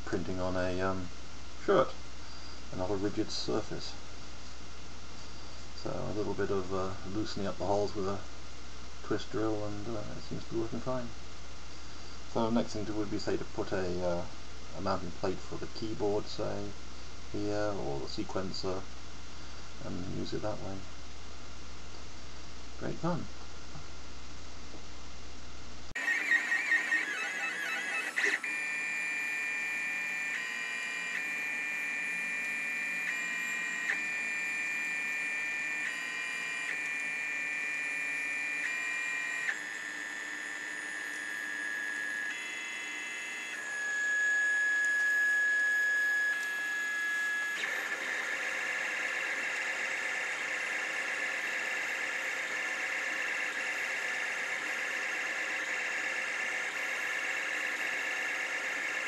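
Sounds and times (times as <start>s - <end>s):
synth electronic tones: 26.0s - 39.8s.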